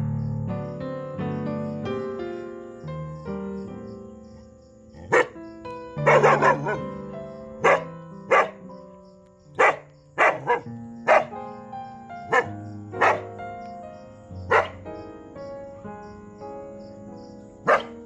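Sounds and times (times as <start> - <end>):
background music with held notes: 0.0 - 18.0
dog barking: 5.0 - 5.4, 6.0 - 7.0, 7.6 - 8.7, 9.6 - 11.4, 12.2 - 13.4, 14.4 - 14.8, 17.6 - 18.0.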